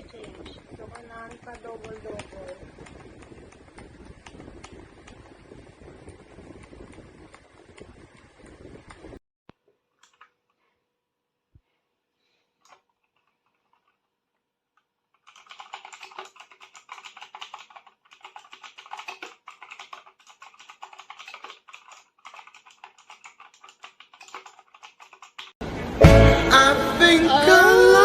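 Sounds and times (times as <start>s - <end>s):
clicky keyboard typing: 0.0s - 5.2s, 15.2s - 25.6s.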